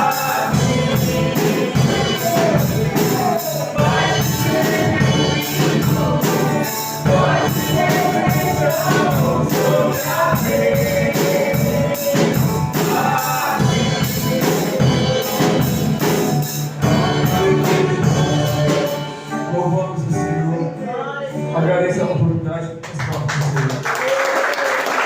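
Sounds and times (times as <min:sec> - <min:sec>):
drum beat: 0:00.0 - 0:19.1
people singing: 0:00.0 - 0:21.8
gospel band playing: 0:00.0 - 0:25.0.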